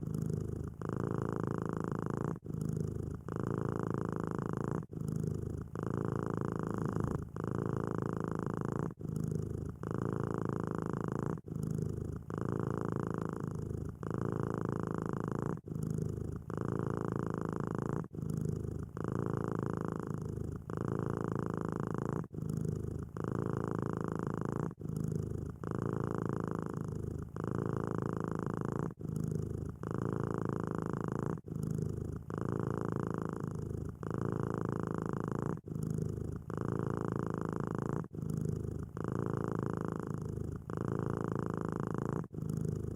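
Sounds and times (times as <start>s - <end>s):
cat purring: 0.0s - 42.9s.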